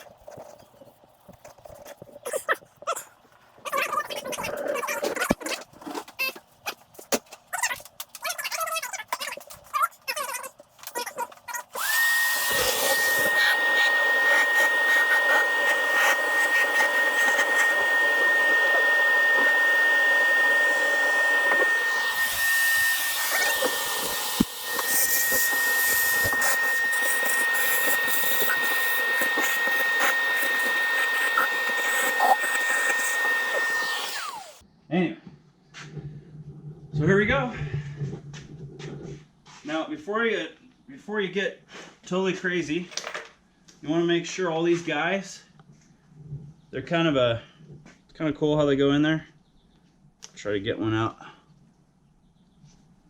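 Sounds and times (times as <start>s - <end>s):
electric motor tool whining: 11.6s - 34.6s.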